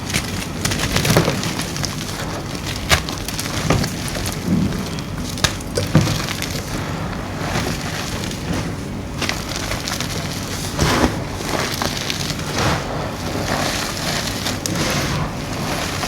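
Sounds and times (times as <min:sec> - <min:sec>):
pieces of chalk snapping: 0:00.0 - 0:06.7
chalk crunching and crackling: 0:00.0 - 0:16.0.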